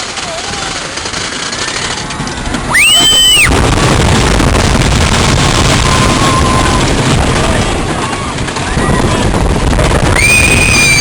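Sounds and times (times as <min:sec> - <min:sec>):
roller coaster rumbling on track: 0:00.0 - 0:11.0
high-pitched scream: 0:02.7 - 0:03.5.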